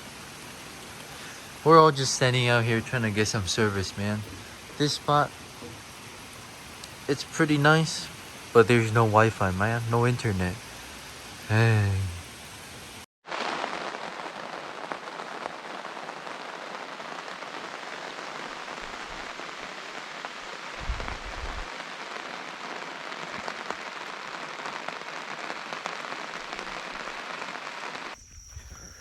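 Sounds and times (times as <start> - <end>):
steady rain falling: 0.0 - 28.2
brief low rumble: 20.8 - 21.7.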